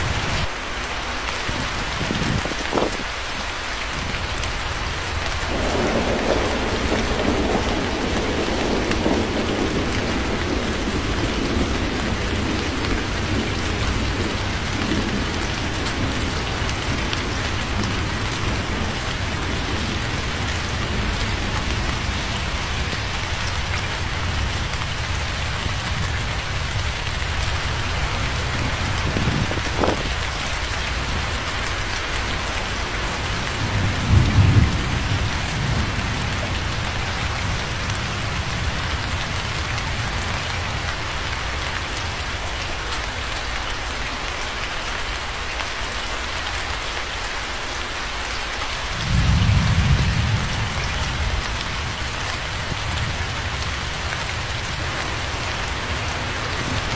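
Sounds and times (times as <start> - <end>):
heavy rain falling: 0.0 - 56.9
thunder rumbling: 5.1 - 42.4, 48.9 - 56.9.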